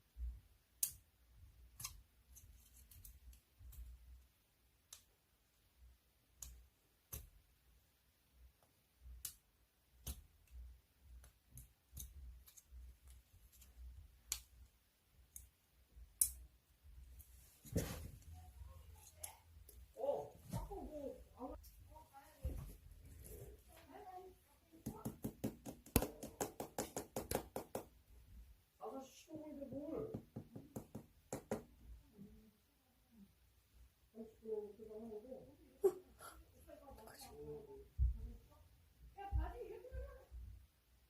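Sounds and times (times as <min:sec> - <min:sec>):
faint clicks and taps: 0:01.7 - 0:05.2, 0:08.5 - 0:16.5, 0:17.1 - 0:21.8
rustling or scraping: 0:17.2 - 0:19.2.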